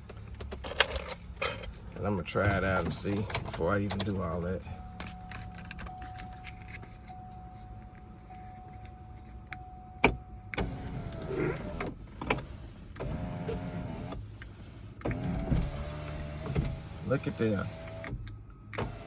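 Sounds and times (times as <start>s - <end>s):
electric sunroof motor running: 10.6s - 11.9s, 15.0s - 18.2s.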